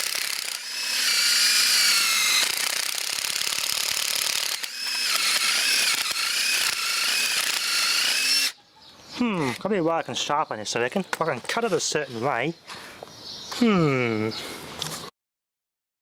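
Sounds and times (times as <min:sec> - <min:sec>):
cordless drill boring into wood: 0:00.0 - 0:08.6, 0:09.4 - 0:09.7.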